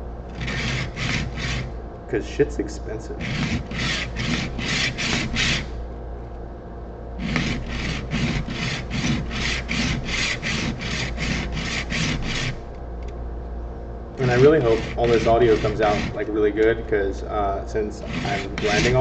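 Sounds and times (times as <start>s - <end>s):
blade scraping on sharpening block: 0.4s - 1.7s, 3.2s - 5.7s, 7.2s - 12.6s, 14.2s - 16.2s, 18.0s - 19.0s.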